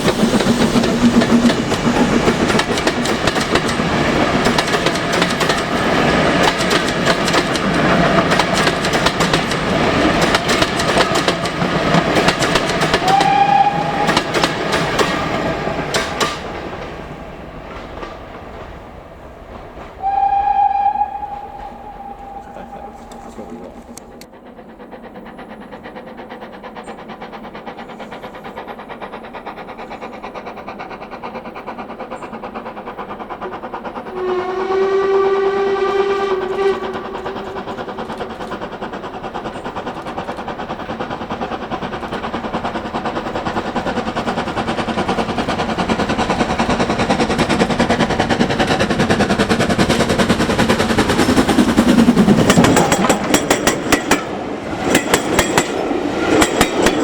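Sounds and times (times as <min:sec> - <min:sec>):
steam locomotive running: 0:00.0 - 0:57.0
steam whistle blast: 0:13.0 - 0:14.4, 0:20.0 - 0:23.6, 0:34.1 - 0:37.7.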